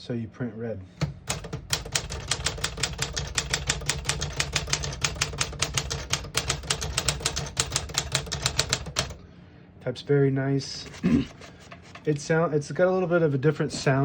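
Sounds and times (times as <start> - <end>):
typewriter keys striking: 1.0 - 9.2.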